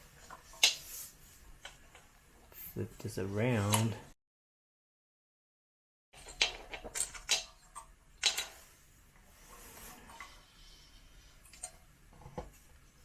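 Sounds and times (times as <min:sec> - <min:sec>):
metal parts clanking: 0:06.2 - 0:08.6.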